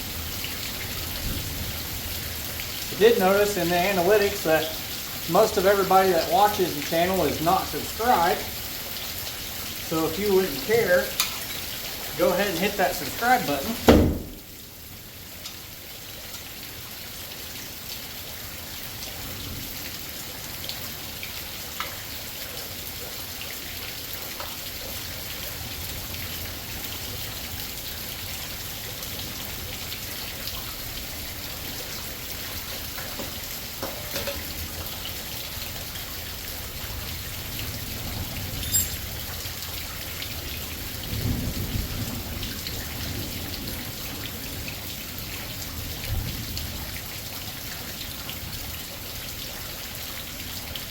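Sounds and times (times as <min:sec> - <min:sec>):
heavy rain: 0:00.0 - 0:50.9
low rumble of thunder: 0:01.0 - 0:02.4, 0:40.4 - 0:44.9.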